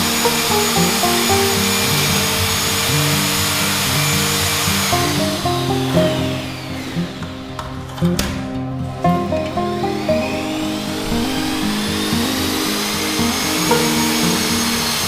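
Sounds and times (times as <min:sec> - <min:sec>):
motor whirring: 0:00.0 - 0:08.5, 0:09.1 - 0:15.0
background music with held notes: 0:00.0 - 0:15.0.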